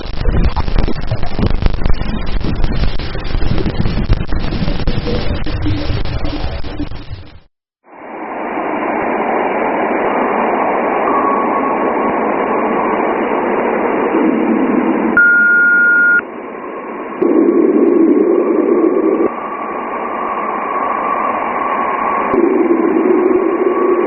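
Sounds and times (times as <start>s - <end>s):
radio static hiss: 0.0s - 7.5s, 17.0s - 19.4s
steady beep: 15.2s - 16.2s.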